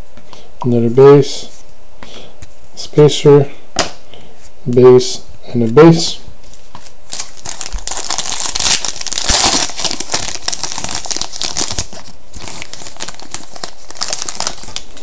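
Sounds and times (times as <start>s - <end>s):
card pack wrapper tearing: 7.1s - 15.0s.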